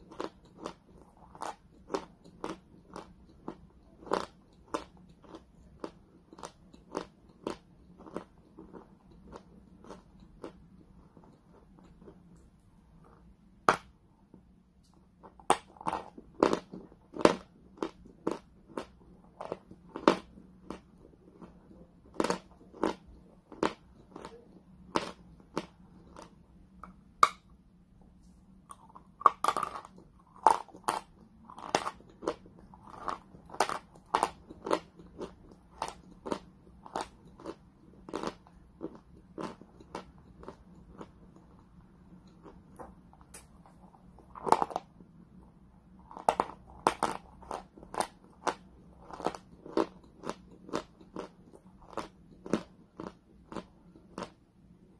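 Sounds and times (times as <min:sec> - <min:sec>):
chalk being chewed: 0:00.0 - 0:13.2.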